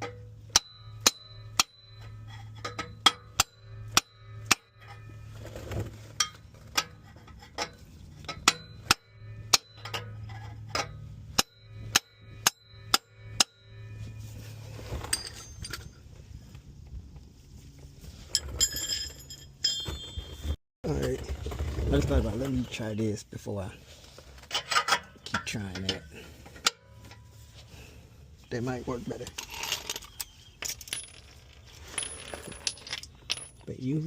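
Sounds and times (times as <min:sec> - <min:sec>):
steady low hum: 0:00.0 - 0:19.5.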